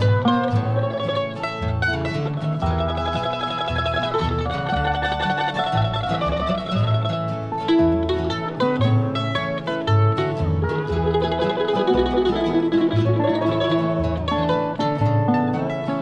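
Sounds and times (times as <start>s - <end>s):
acoustic guitar: 0.0s - 16.0s
banjo picking: 0.0s - 16.0s
bass line: 0.0s - 16.0s
mandolin: 0.0s - 16.0s.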